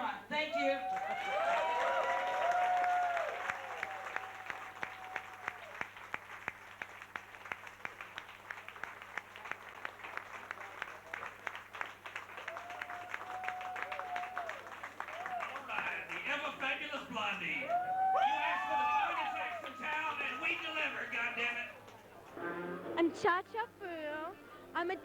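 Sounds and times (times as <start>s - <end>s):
people whooping: 0.5s - 5.8s, 12.4s - 15.7s, 17.6s - 21.8s
audience clapping: 0.6s - 22.5s.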